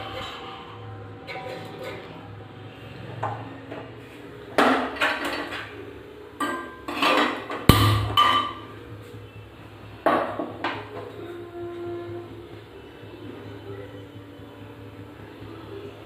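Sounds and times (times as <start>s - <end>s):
metal pots clanking: 4.6s - 8.9s.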